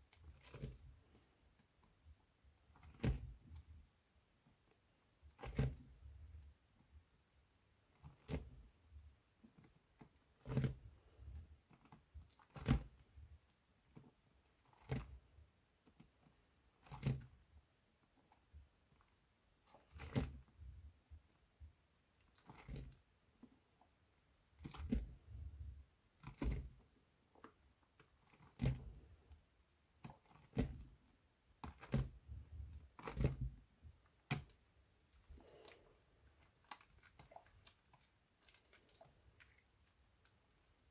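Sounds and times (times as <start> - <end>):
soft knocks and squishes of soap: 0.1 - 3.8, 4.4 - 6.5, 7.9 - 40.9.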